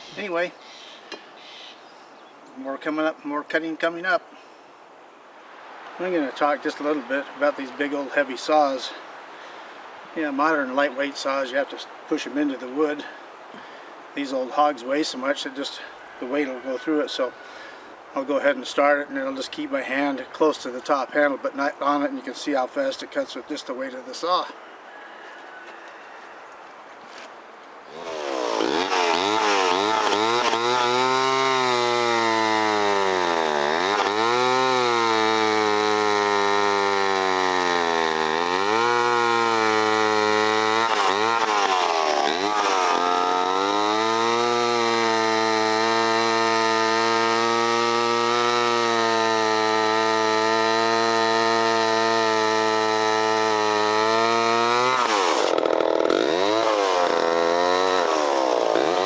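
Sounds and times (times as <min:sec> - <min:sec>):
chainsaw cutting log: 0:27.9 - 0:59.0.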